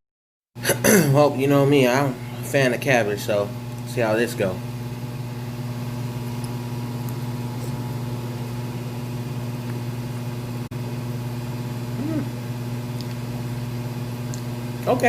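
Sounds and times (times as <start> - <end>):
low electrical hum: 0.6 - 15.0
murmured voice: 12.0 - 12.3.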